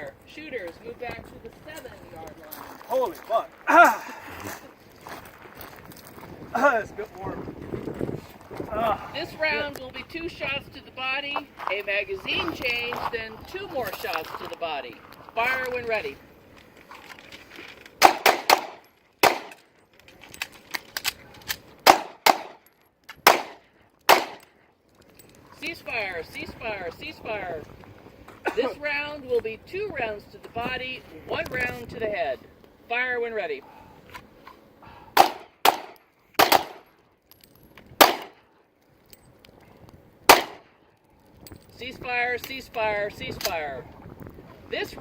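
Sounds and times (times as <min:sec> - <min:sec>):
metallic clicks of magazine change: 0:16.5 - 0:21.9
pistol shots: 0:18.0 - 0:19.7, 0:21.8 - 0:22.6, 0:23.2 - 0:24.5, 0:35.2 - 0:36.9, 0:38.0 - 0:38.5, 0:40.3 - 0:40.7.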